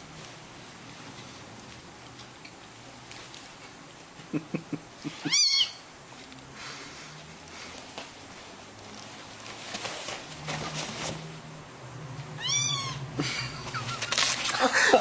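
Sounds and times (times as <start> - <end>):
faint rustling: 6.1 - 11.5.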